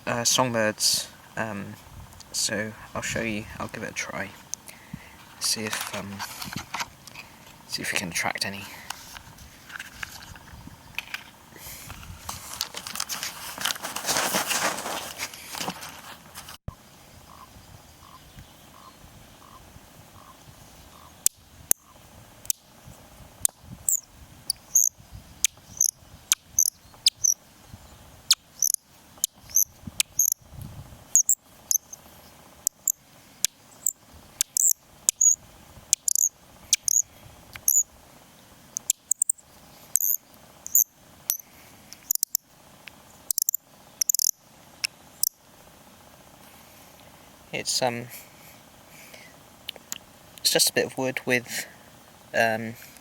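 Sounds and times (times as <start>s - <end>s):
bird call squeaky chirps: 23.9s - 27.4s, 28.3s - 30.4s, 31.1s - 32.0s, 33.8s - 37.9s, 38.8s - 41.4s, 43.3s - 44.4s.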